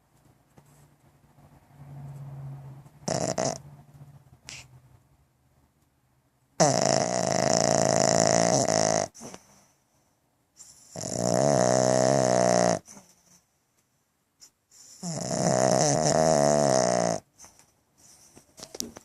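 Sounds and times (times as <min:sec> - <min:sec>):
dog snoring: 0:03.0 - 0:03.6, 0:06.6 - 0:09.6, 0:10.6 - 0:13.1, 0:14.7 - 0:18.3.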